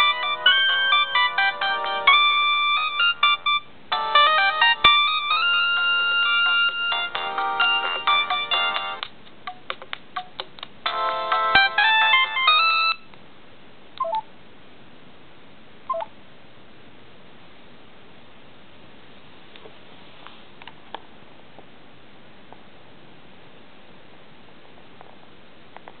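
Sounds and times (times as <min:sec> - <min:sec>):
phone ringtone melody: 0:00.0 - 0:09.0, 0:10.9 - 0:13.0
short phone beeps: 0:15.9 - 0:16.1.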